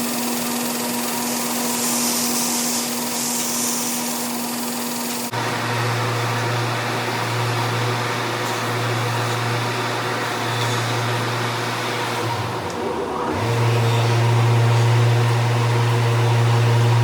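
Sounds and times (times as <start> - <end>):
electric power tool motor running: 0.0 - 17.0.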